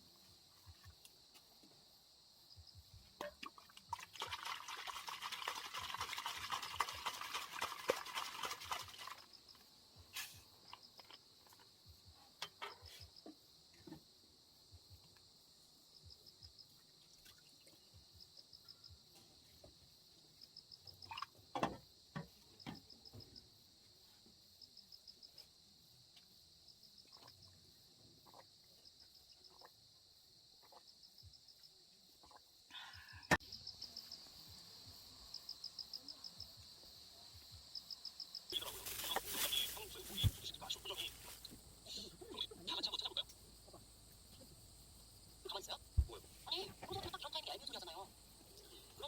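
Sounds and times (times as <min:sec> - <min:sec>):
crickets chirping: 0:00.0 - 0:49.0
rustling crackling noise: 0:38.5 - 0:41.7.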